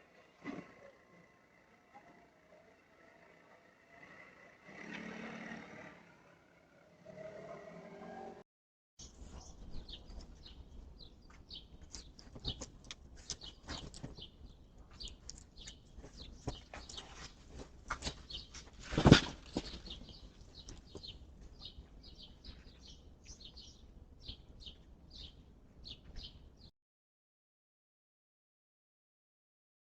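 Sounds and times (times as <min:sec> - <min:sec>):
small birds chirping: 0:09.0 - 0:26.7.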